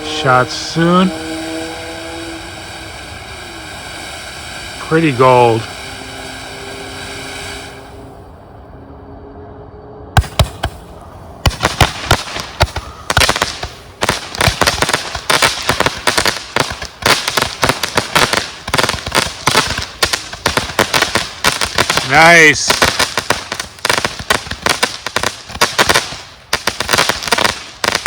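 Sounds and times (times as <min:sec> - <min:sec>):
firework fountain hissing: 0:00.0 - 0:08.8, 0:10.2 - 0:28.0
firework pops and crackles: 0:10.2 - 0:28.0.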